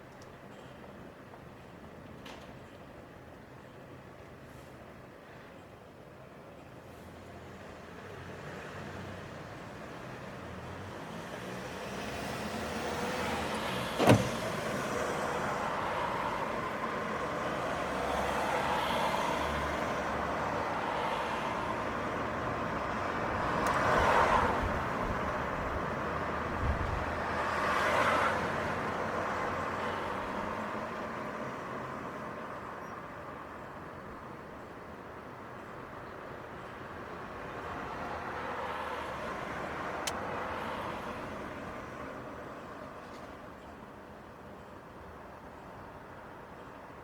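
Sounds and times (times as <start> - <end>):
hum of traffic: 0.0 - 47.0
vehicles passing close: 7.6 - 32.6, 35.9 - 43.6.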